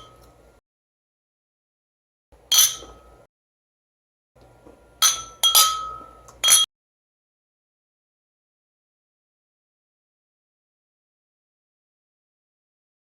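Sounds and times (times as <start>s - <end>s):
glasses clinking: 2.5s - 3.0s, 5.0s - 6.7s.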